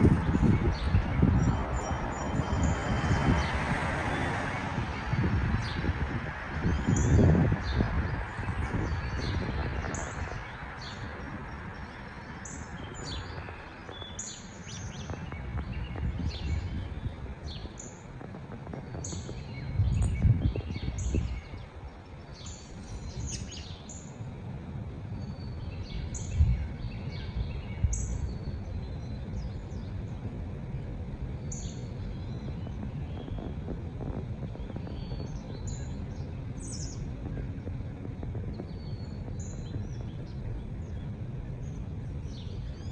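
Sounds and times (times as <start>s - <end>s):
birds chirping: 0.0s - 5.9s, 6.5s - 24.2s, 31.3s - 42.9s
low rumble: 0.0s - 11.6s.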